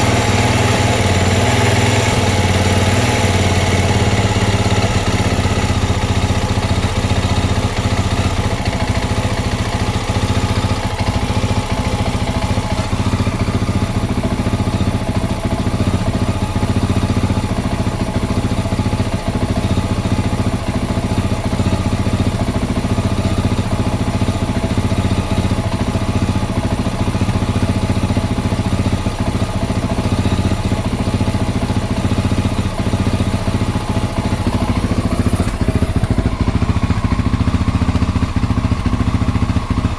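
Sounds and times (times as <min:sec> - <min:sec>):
motorcycle engine idling roughly: 0:00.0 - 0:39.9.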